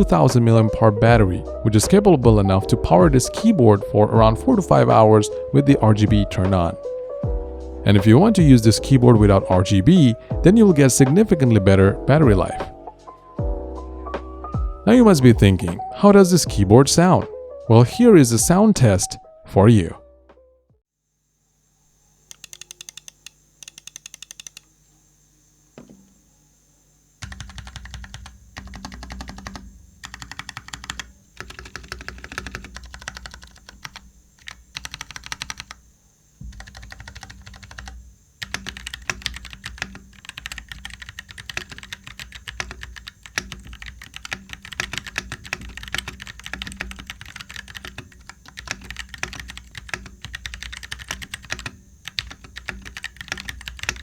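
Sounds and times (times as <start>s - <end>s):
mechanical keyboard typing: 22.3s - 24.7s, 27.2s - 35.8s, 36.5s - 54.0s.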